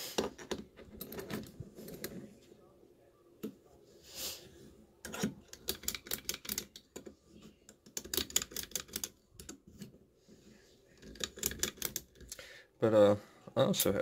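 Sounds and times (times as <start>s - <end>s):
lock cylinders and keys clicking: 0.4s - 2.1s, 5.1s - 7.1s, 7.8s - 9.6s, 11.0s - 12.3s.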